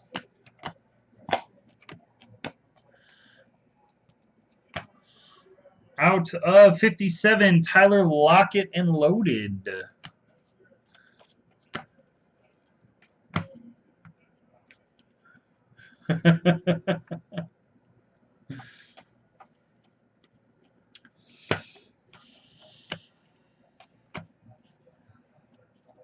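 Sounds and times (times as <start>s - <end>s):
cards clicking and tapping: 0.0s - 3.2s, 4.1s - 5.0s, 10.8s - 12.0s, 13.0s - 13.6s, 21.4s - 21.8s, 23.8s - 24.3s
burst of laughter: 16.1s - 17.4s.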